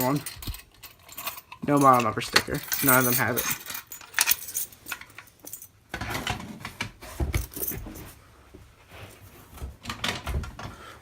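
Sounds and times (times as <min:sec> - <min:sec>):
keys jangling: 0:00.0 - 0:05.8
hard objects clicking and rattling: 0:00.0 - 0:08.1.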